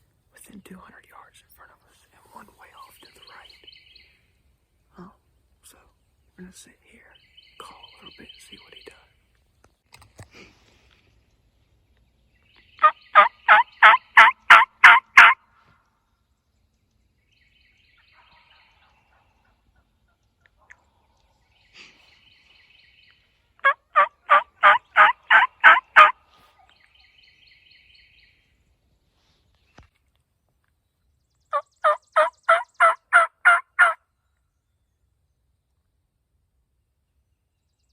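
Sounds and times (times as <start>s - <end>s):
turkey call yelps: 12.8s - 15.4s, 23.6s - 26.2s, 31.5s - 34.0s.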